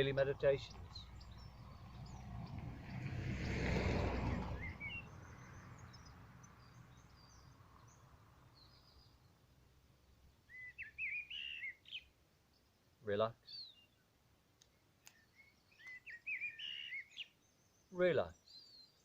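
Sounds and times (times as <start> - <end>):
bird chirps and warbles: 0.0 - 19.0
quick bird calls: 10.5 - 12.1, 14.7 - 18.4.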